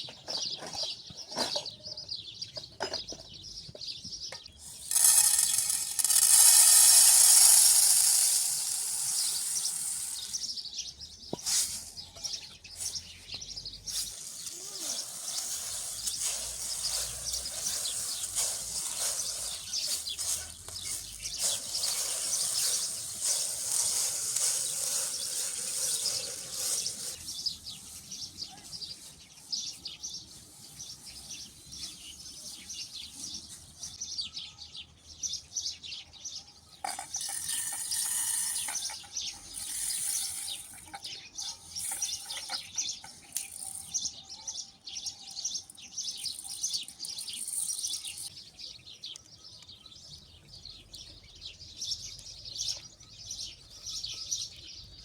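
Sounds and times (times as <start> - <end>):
small birds chirping: 0.0 - 55.0
rustling hiss: 4.6 - 10.6, 12.8 - 28.2.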